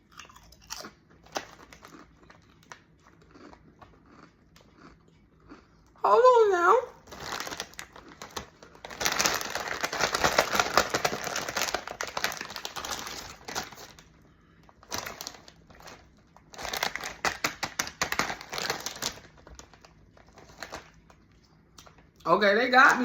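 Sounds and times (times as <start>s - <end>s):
chip bag crinkling: 0.1s - 4.9s, 7.0s - 22.1s.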